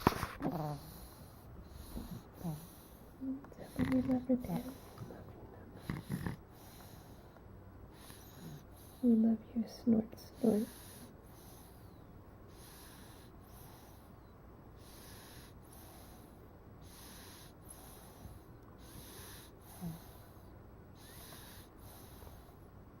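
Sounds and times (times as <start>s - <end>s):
baby snoring: 0.4s - 1.0s, 1.7s - 2.9s, 3.6s - 5.0s, 5.8s - 7.2s, 18.8s - 20.3s.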